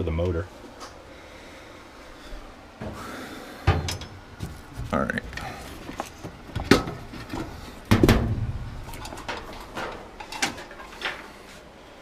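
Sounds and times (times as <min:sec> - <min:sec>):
heavy thud: 0:07.9 - 0:08.9.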